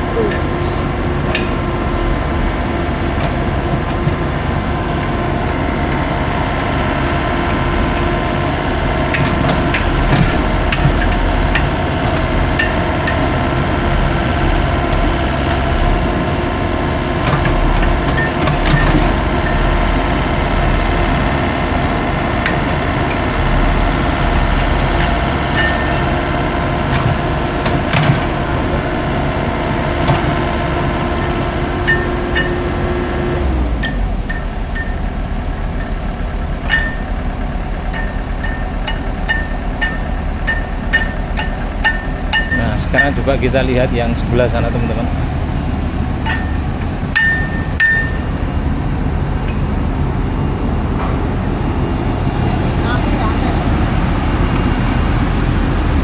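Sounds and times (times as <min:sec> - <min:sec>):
diesel construction machinery running: 0:00.0 - 0:56.0
metallic clanks and knocks: 0:09.1 - 0:16.4, 0:17.1 - 0:19.8, 0:33.7 - 0:43.8, 0:45.5 - 0:48.4.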